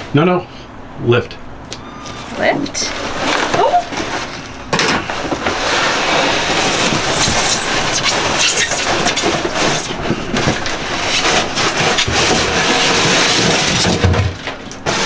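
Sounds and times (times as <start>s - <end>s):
cardboard and plastic packaging scraping: 2.9s - 15.0s.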